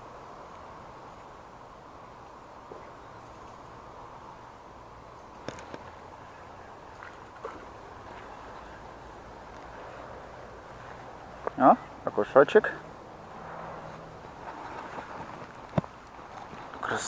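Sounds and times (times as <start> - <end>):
faint bird chirps: 2.8 - 3.6
fishing tackle clicks: 5.4 - 6.0.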